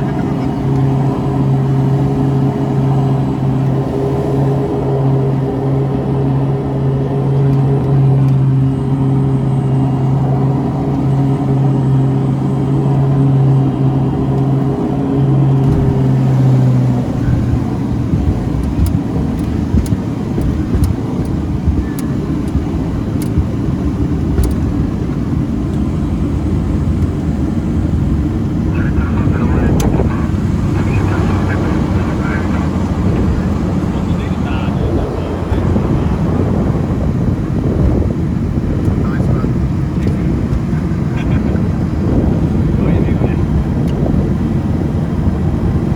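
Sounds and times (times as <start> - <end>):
rough rumble: 0.0 - 45.9
turboprop propeller drone: 0.0 - 45.9
sharp clicks: 18.6 - 23.4, 24.4 - 24.7.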